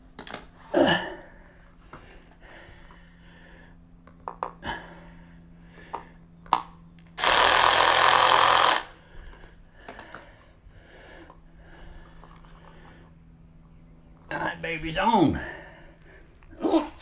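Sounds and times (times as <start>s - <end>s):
power driver tightening bolt: 7.2s - 8.9s.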